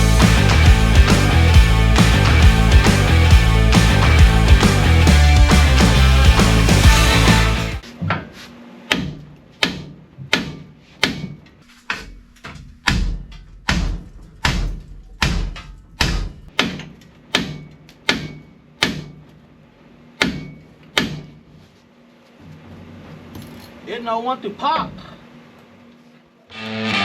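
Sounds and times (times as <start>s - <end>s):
hammer striking steel: 8.9s - 12.2s, 12.8s - 19.2s, 20.2s - 21.4s.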